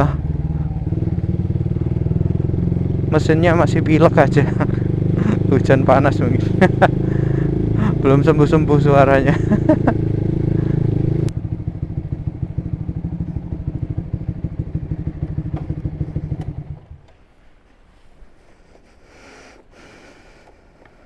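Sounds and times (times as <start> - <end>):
motorcycle engine idling: 0.0 - 17.4
man talking: 3.1 - 6.9, 7.8 - 9.7.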